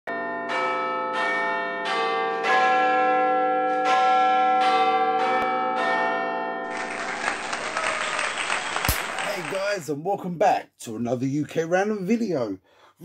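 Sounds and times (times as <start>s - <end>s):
peal of bells: 0.1s - 8.1s.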